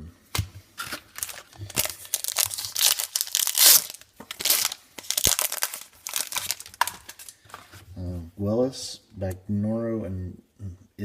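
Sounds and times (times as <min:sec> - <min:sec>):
wrapper tearing and crinkling: 0:00.8 - 0:07.4.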